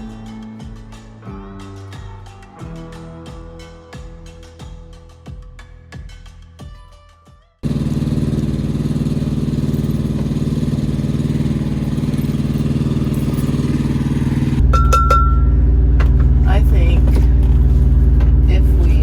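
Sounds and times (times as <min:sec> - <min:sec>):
truck diesel engine running: 0:07.6 - 0:19.0.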